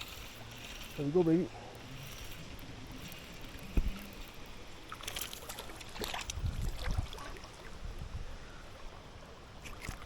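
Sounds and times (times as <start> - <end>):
river water sloshing: 0.0 - 10.0
light splashes and knocks: 3.6 - 7.4.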